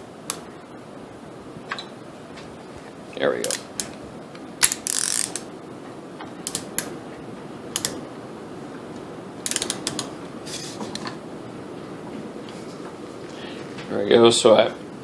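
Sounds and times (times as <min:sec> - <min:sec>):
ratcheting torque wrench clicking: 0:03.4 - 0:03.9, 0:04.6 - 0:05.5, 0:06.4 - 0:06.9, 0:07.8 - 0:08.0, 0:09.4 - 0:10.1.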